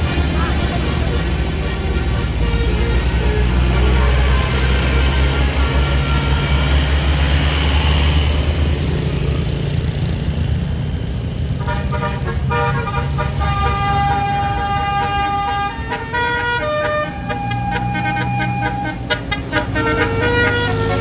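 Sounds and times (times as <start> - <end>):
multi-note bus horn tune: 0.0 - 8.6, 11.6 - 21.0
bus engine running: 0.0 - 21.0.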